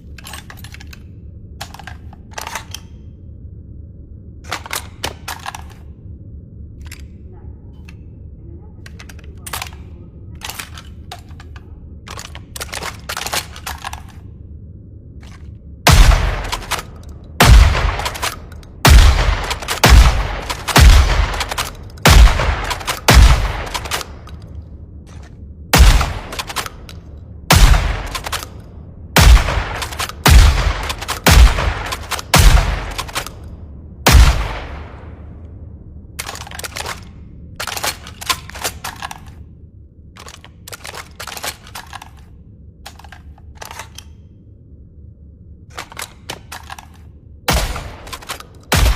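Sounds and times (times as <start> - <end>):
mechanical clicks: 15.1 - 35.5, 40.1 - 44.5, 45.7 - 48.9
shotgun shots echoing: 15.9 - 24.3, 25.7 - 26.9, 27.5 - 28.6, 29.2 - 33.4, 34.0 - 35.2, 47.5 - 48.9.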